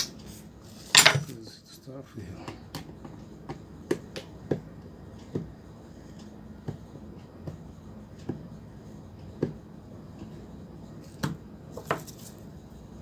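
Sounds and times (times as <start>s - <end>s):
tools clicking and knocking: 0.9s - 1.4s.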